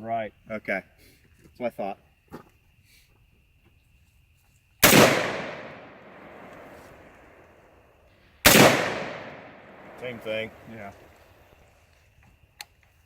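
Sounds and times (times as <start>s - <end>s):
gunshot echoing: 4.8s - 7.4s, 8.4s - 10.8s.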